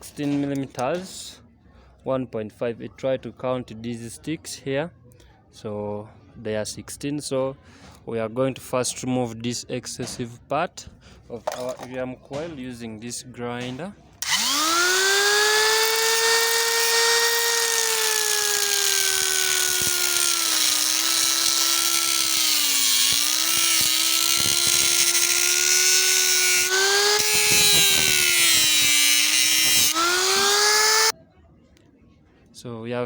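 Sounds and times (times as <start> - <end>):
electric grinder whining: 14.2 - 31.1.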